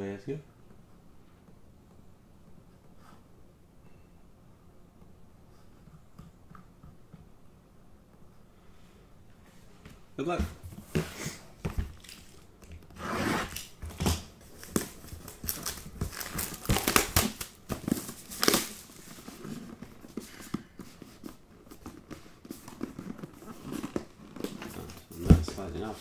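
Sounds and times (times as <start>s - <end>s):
plastic wrap crinkling and tearing: 13.4s - 19.8s.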